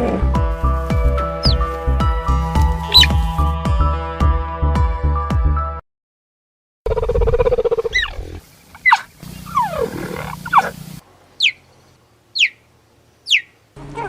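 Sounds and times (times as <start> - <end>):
cheetah chirping: 1.3 - 1.8, 2.6 - 3.4, 6.9 - 14.0.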